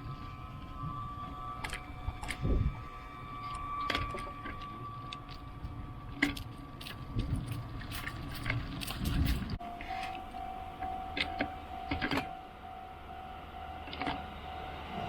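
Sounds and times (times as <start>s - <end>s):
level crossing warning bell: 0.0s - 15.0s
bicycle rattling and clicking: 1.6s - 12.4s
faint steady tone: 9.6s - 15.0s.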